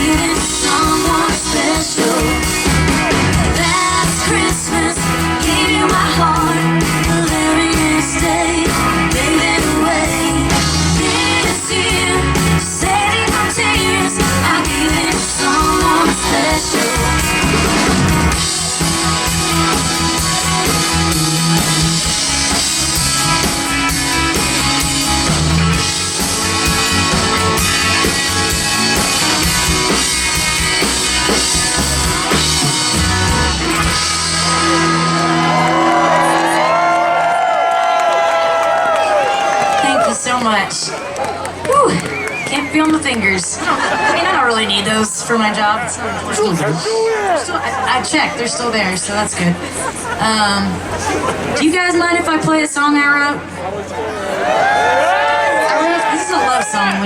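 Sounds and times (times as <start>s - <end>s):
woman singing: 0.0s - 2.7s, 3.4s - 17.2s
drums: 0.0s - 53.6s
guitar: 0.0s - 53.6s.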